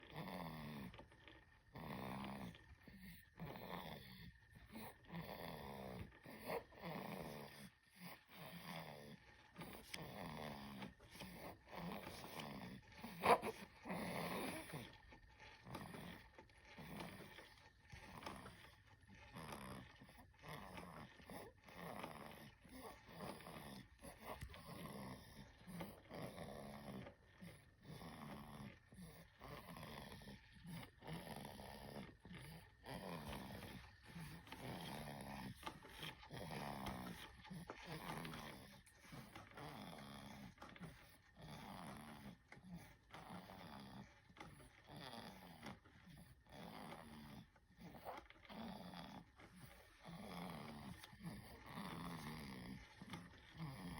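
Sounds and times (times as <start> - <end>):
baby snoring: 1.7 - 9.1, 9.7 - 14.9, 19.4 - 42.4, 50.0 - 53.9.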